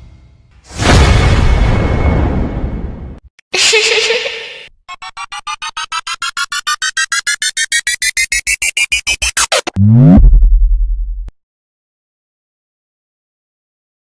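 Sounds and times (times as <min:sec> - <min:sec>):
rising electronic beeps: 0:04.9 - 0:11.3.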